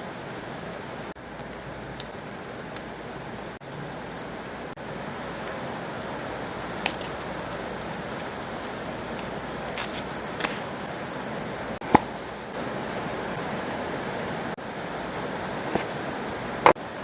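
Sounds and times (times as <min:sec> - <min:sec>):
steady rain: 0:00.0 - 0:17.0.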